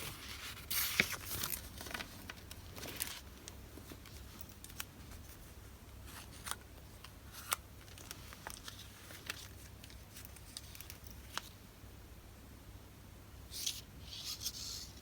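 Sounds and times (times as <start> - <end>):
paper and packaging rustling: 0.0 - 11.6.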